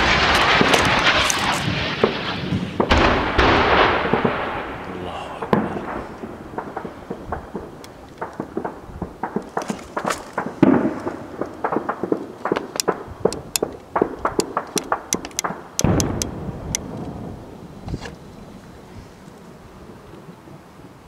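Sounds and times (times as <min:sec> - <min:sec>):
heavy deep blasts: 0:00.0 - 0:09.3, 0:13.0 - 0:17.8
gunfire cracks: 0:00.0 - 0:17.0.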